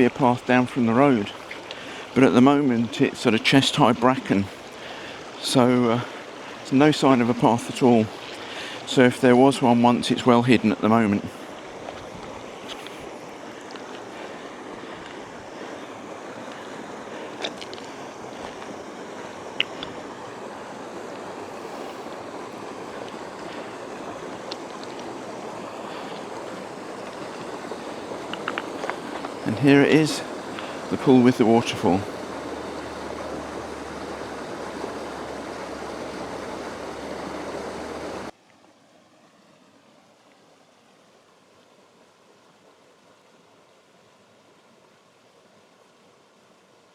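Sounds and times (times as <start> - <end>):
river rushing over rocks: 0.0 - 40.2
waterfall pouring into pool: 13.2 - 38.4.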